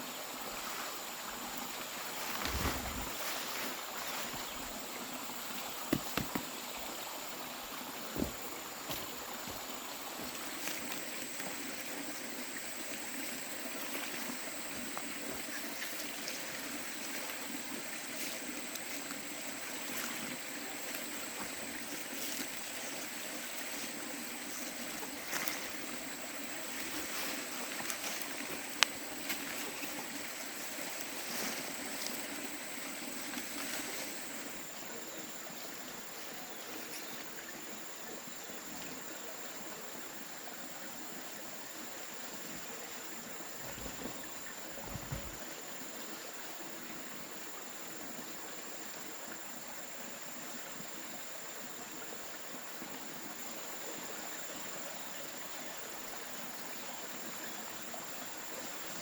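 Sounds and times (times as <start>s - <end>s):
stream flowing: 0.0s - 59.0s
soft low bumps: 43.6s - 45.4s.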